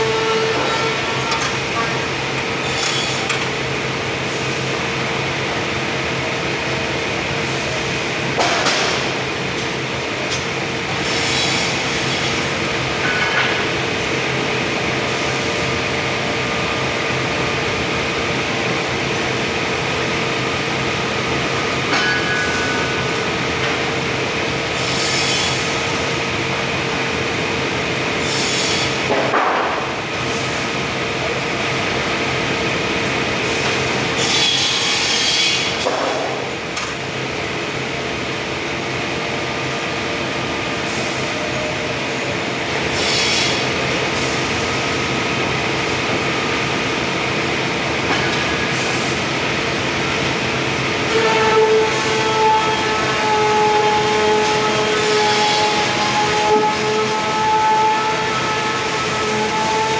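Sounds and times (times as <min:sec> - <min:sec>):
sawmill machinery running: 0:00.0 - 0:59.9.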